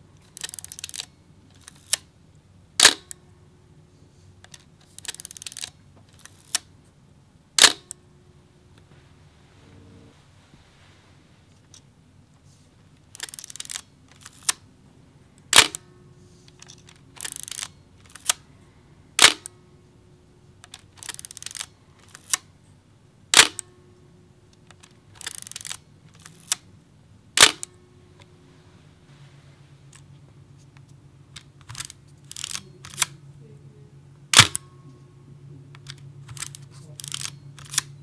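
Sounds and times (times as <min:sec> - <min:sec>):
film advance ratcheting rattle: 0:00.2 - 0:02.1, 0:02.8 - 0:03.1, 0:04.4 - 0:06.7, 0:07.6 - 0:07.9, 0:13.0 - 0:14.6, 0:15.5 - 0:15.8, 0:16.5 - 0:18.4, 0:19.2 - 0:19.5, 0:20.6 - 0:22.5, 0:23.3 - 0:23.6, 0:24.6 - 0:26.6, 0:27.4 - 0:27.7, 0:31.3 - 0:33.2, 0:34.3 - 0:34.6, 0:35.8 - 0:37.9
small camera click: 0:00.3 - 0:02.1, 0:02.8 - 0:03.2, 0:04.4 - 0:06.7, 0:07.6 - 0:08.0, 0:13.0 - 0:14.6, 0:15.5 - 0:15.9, 0:16.5 - 0:18.4, 0:19.2 - 0:19.6, 0:20.6 - 0:22.5, 0:23.3 - 0:23.7, 0:24.6 - 0:26.7, 0:27.4 - 0:27.8, 0:31.4 - 0:33.2, 0:34.3 - 0:34.7, 0:35.8 - 0:37.9
camera shutter clacking: 0:00.4 - 0:02.0, 0:02.8 - 0:03.1, 0:04.9 - 0:06.6, 0:07.6 - 0:07.9, 0:13.1 - 0:14.6, 0:15.5 - 0:15.8, 0:16.6 - 0:18.4, 0:19.2 - 0:19.5, 0:20.7 - 0:22.4, 0:23.4 - 0:23.6, 0:25.2 - 0:26.6, 0:27.4 - 0:27.7, 0:31.6 - 0:33.1, 0:34.4 - 0:34.6, 0:35.8 - 0:37.9.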